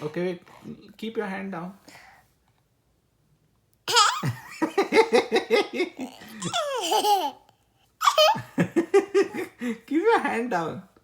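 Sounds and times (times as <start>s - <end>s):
young child giggling: 3.9s - 9.6s.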